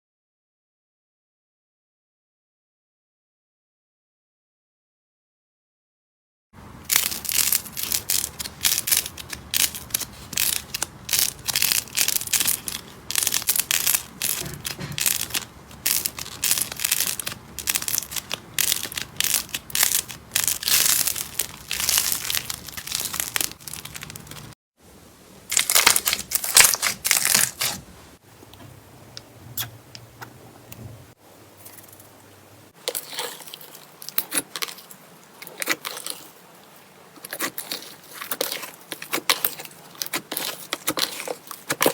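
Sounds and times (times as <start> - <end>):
slime squishing and popping: 6.9 - 24.5, 25.5 - 27.8.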